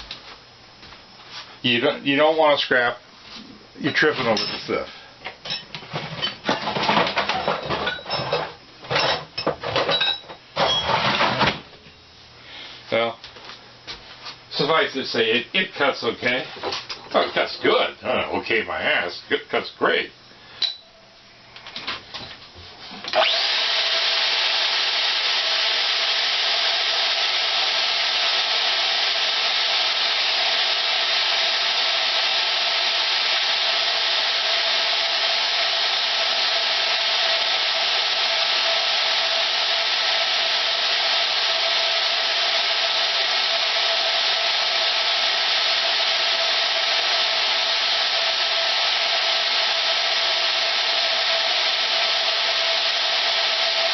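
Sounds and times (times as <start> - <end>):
band saw running: 23.1 - 53.9.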